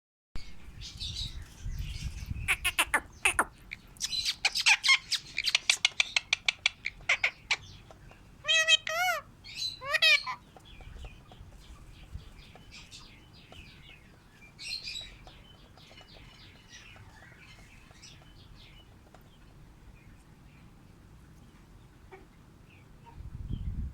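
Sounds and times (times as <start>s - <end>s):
parrot squawks: 2.5s - 3.5s, 8.4s - 10.4s
parrots chirping: 2.5s - 10.5s.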